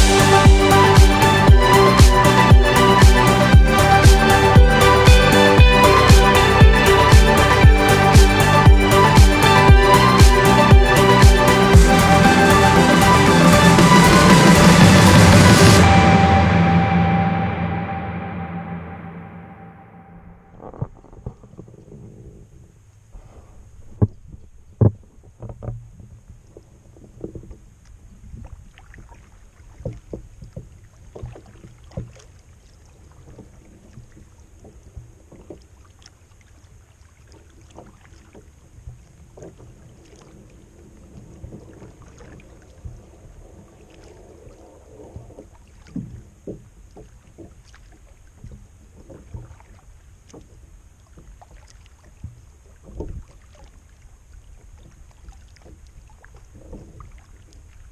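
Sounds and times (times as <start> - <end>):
paddle splashing water: 0.0 - 15.9, 23.1 - 57.9
low rumble: 0.0 - 20.9.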